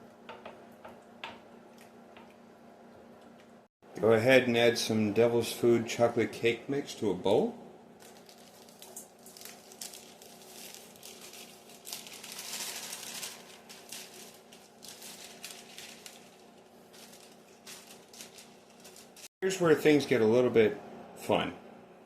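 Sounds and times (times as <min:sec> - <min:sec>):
plastic bag crinkling: 0:08.0 - 0:19.3.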